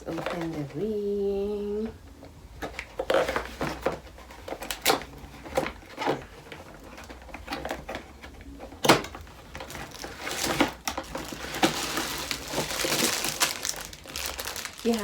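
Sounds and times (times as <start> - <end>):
plastic and cardboard clicks and knocks: 2.6 - 13.9
packaging rustling: 2.6 - 15.0.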